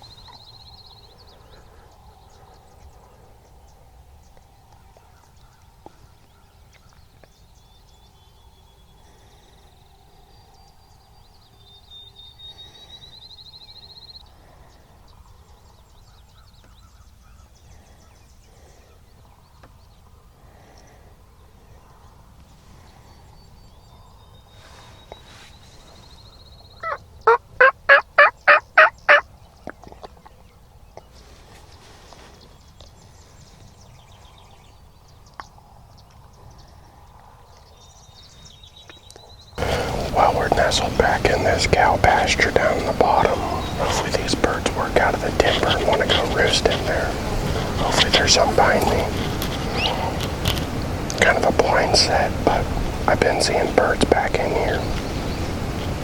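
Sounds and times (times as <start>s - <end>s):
loud turkey yelps: 26.8s - 29.2s.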